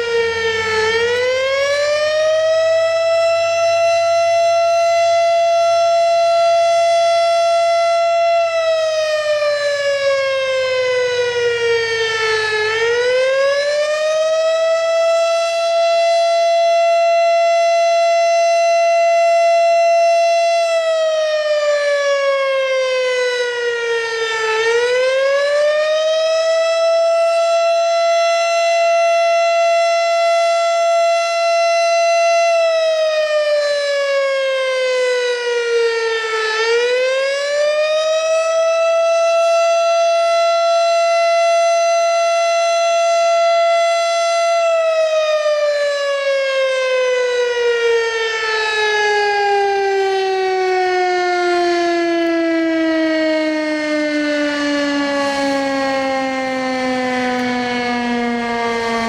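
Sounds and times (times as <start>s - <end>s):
fire siren wailing: 0.0s - 59.0s.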